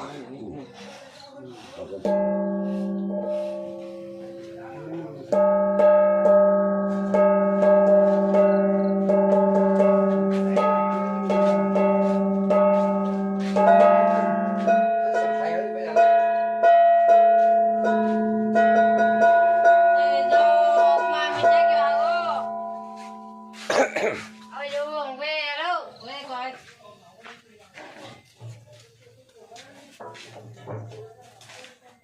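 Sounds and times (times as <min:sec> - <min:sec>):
plucked string instrument melody: 0:01.6 - 0:24.8.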